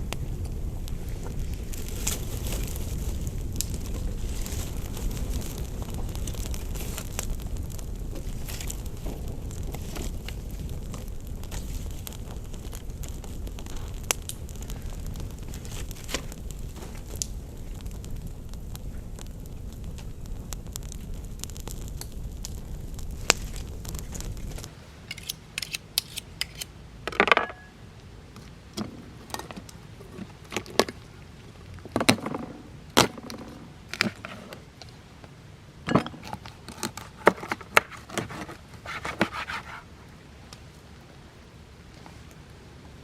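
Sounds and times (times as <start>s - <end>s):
low steady rumble: 0.0s - 25.6s
campfire crackling: 0.0s - 43.0s
utensils clicking and scraping: 25.1s - 26.7s.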